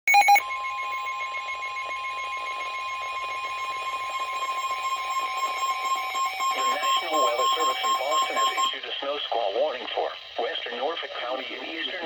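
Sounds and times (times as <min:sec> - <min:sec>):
steady alert tone: 0:00.1 - 0:08.7
electronic data bursts: 0:00.1 - 0:08.9.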